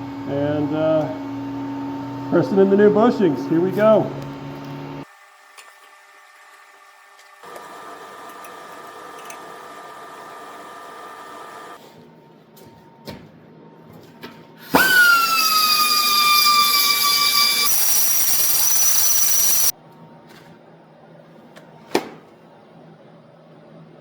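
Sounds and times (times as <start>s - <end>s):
power tool cutting metal: 14.6s - 19.7s.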